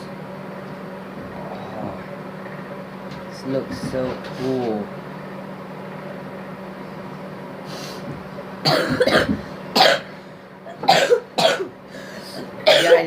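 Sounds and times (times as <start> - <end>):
steady low hum: 0.0 - 13.0
person coughing: 8.6 - 10.1, 10.7 - 13.0.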